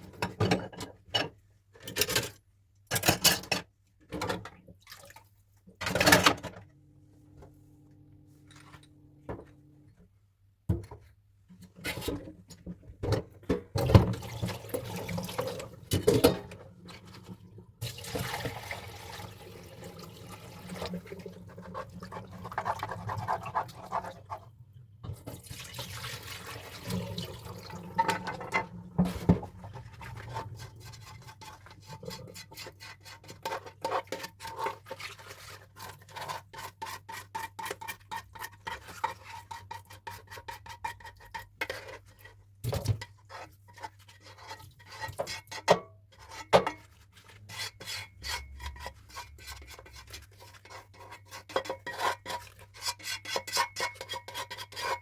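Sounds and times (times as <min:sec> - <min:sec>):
dishes being scrubbed: 0:19.9 - 0:24.5, 0:25.6 - 0:55.0.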